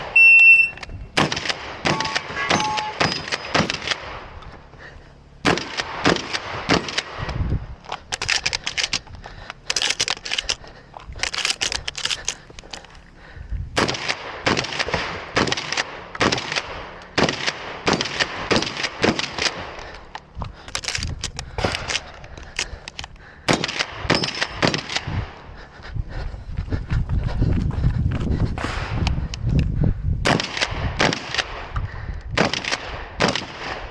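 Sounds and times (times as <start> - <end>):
shot timer beep: 0.2 - 0.9, 1.9 - 3.2
shotgun firing: 1.2 - 4.2, 5.4 - 7.3, 13.8 - 19.7, 23.5 - 25.1, 30.2 - 31.7, 32.4 - 33.9
metallic ringing of hit steel: 1.9 - 3.6.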